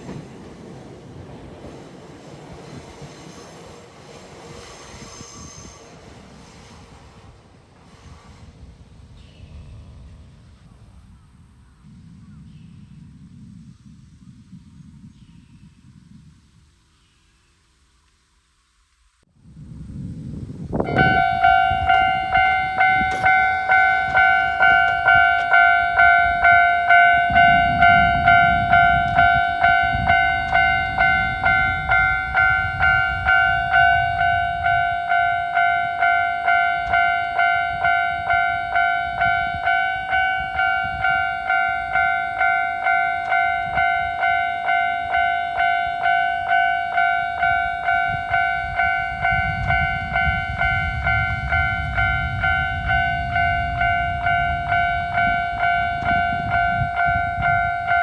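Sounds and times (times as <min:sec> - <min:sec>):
train rumbling past: 0:00.0 - 0:12.2, 0:19.4 - 0:58.0
level crossing warning bell ringing: 0:20.9 - 0:58.0.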